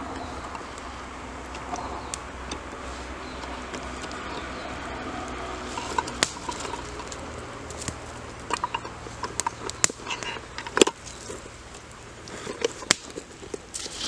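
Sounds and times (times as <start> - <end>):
campfire crackling: 0.0 - 14.0
sharp fire pops: 5.8 - 14.0.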